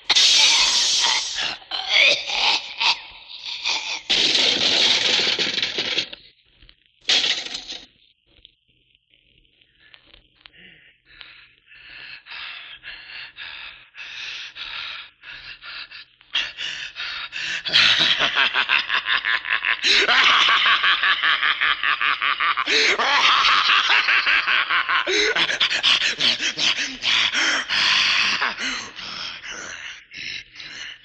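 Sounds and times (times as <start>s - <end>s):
man panting heavily: 10.6s - 18.4s, 22.4s - 31.0s.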